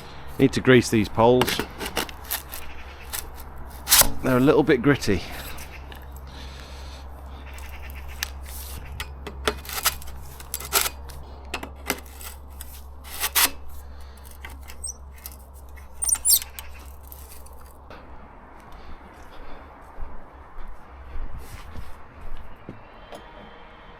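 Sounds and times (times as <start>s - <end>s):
pole sections scraping and knocking: 1.3s - 4.5s, 7.6s - 17.8s
high squeaks: 1.6s - 4.1s, 12.0s - 17.7s.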